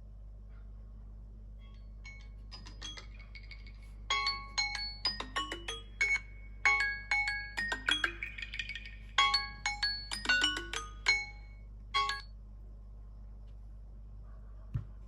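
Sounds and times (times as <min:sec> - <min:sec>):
phone alarm chime notes: 0:01.7 - 0:12.3.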